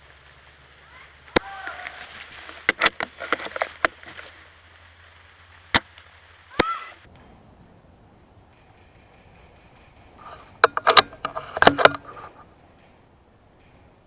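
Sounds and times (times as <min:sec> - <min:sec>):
airsoft rifle clicking: 0:01.3 - 0:04.4, 0:08.5 - 0:13.0.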